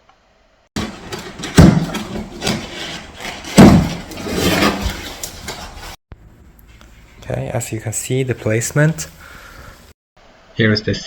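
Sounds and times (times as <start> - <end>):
box and packaging rustling: 0.8 - 6.0.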